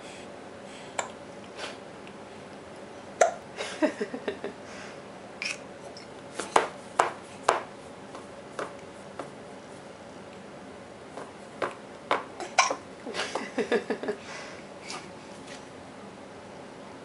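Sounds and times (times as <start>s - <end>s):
baby hiccuping: 12.4s - 12.8s.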